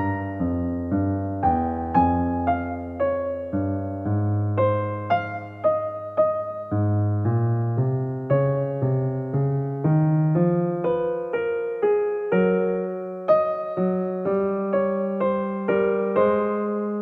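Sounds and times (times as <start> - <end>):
slow electric piano melody: 0.0 - 17.0.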